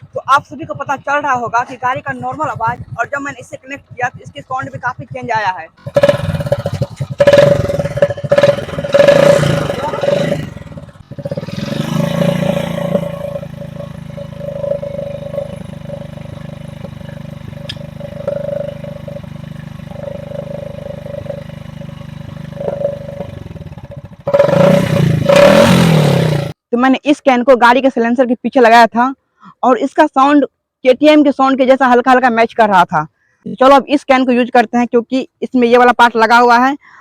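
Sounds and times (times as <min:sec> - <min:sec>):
motorcycle engine revving and idling: 0:00.0 - 0:26.6
steady tone: 0:05.7 - 0:25.4.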